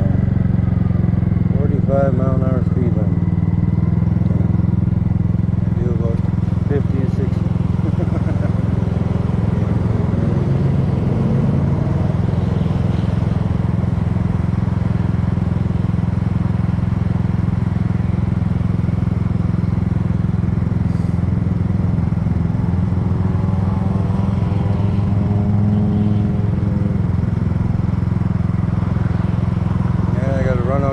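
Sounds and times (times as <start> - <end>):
scooter engine running: 0.0 - 30.9.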